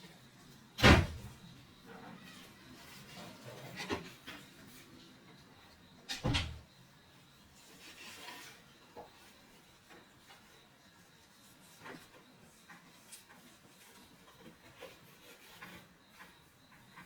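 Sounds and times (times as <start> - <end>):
soft rubbing and rustling: 7.2 - 17.0.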